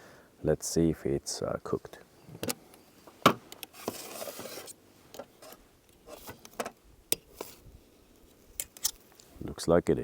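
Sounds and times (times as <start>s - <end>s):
rasping scrape: 3.8s - 4.8s.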